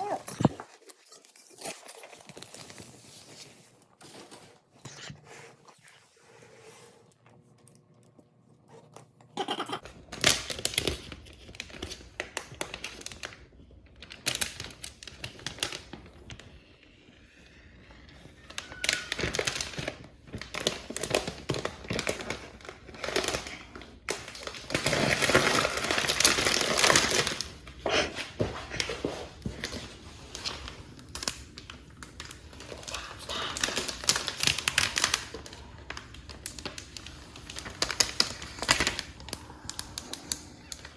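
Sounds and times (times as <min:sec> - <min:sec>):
packaging crinkling: 0:18.4 - 0:40.9
packaging tearing: 0:18.6 - 0:27.6, 0:29.6 - 0:40.9.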